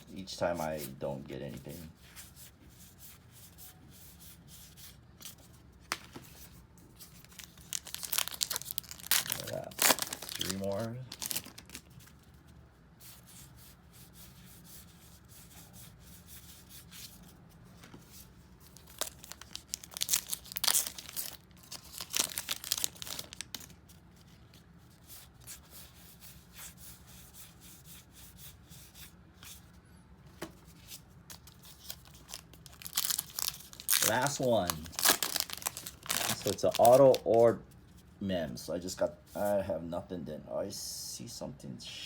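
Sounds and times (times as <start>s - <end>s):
card pack wrapper crinkling: 7.0s - 12.2s, 18.6s - 23.8s, 31.3s - 37.4s.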